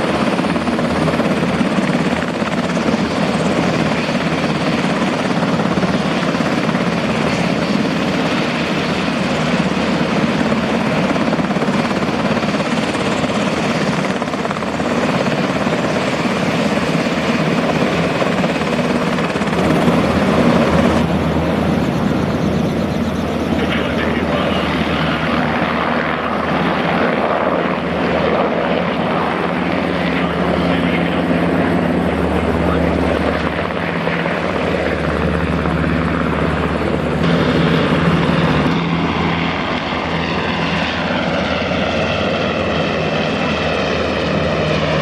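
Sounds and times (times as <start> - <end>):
helicopter turbine and rotor: 0.0 - 45.0.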